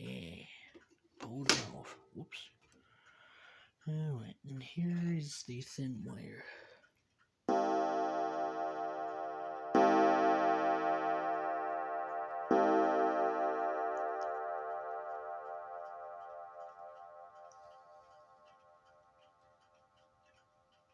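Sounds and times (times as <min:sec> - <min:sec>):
faint clock ticking: 0:00.0 - 0:20.9
wire clock gong ringing: 0:07.5 - 0:18.6.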